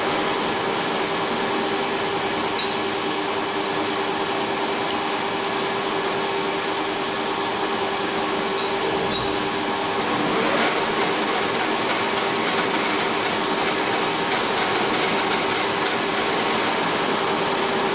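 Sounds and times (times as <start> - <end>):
lathe running: 9.8 - 17.9.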